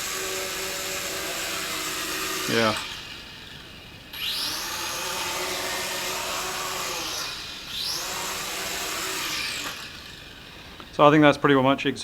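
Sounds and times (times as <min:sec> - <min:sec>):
quadcopter motors whining: 0:00.0 - 0:11.4.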